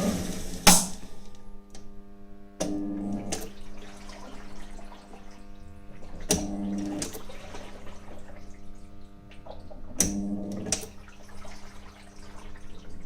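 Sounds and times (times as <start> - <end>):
motor surging: 0.0 - 1.0
washing machine motor humming: 0.0 - 13.0.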